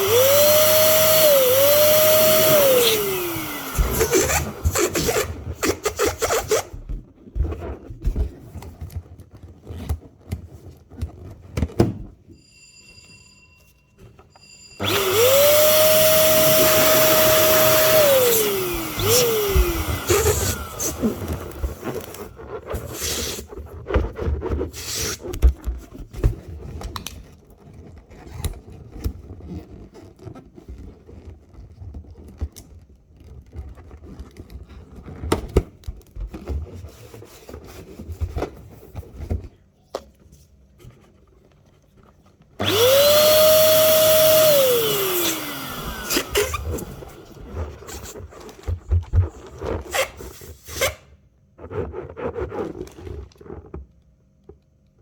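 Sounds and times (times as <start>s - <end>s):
electric balloon pump motor: 0.0s - 6.8s, 14.8s - 23.5s, 42.6s - 48.2s
balloon rubber rubbing and squeaking: 0.0s - 11.5s, 14.8s - 32.4s, 42.6s - 53.9s.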